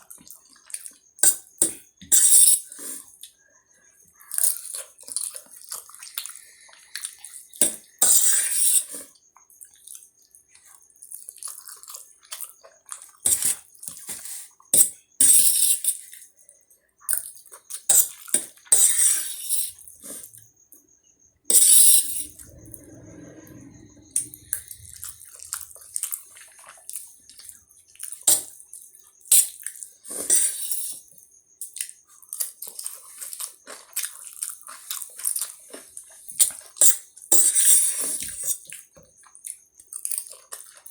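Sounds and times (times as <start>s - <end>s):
noodles slurped and chewed: 4.3s - 7.6s, 8.3s - 14.5s, 22.2s - 28.2s, 32.1s - 40.9s.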